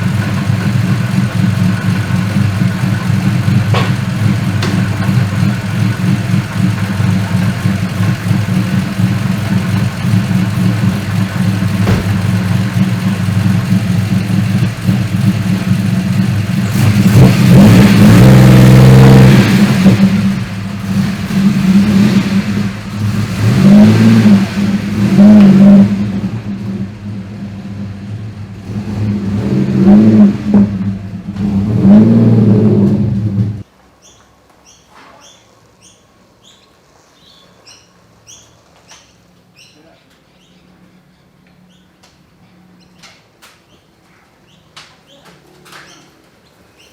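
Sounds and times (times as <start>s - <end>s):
car engine idling and revving: 0.0s - 33.7s.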